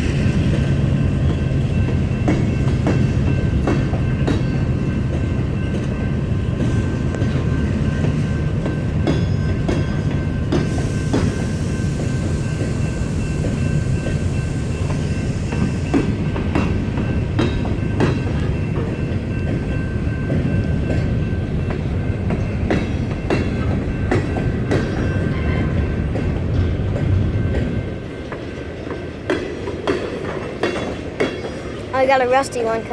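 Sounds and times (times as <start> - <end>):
train wheels rumbling on rail: 0.0 - 32.9
wheels clacking over rail joints: 14.9 - 32.9.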